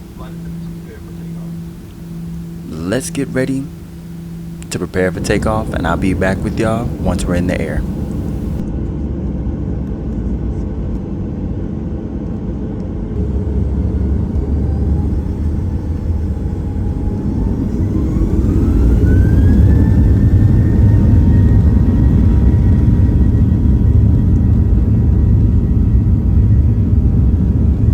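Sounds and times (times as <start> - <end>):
jet engine rumble: 0.0 - 8.7
jet engine whine: 0.0 - 8.9, 13.1 - 27.9.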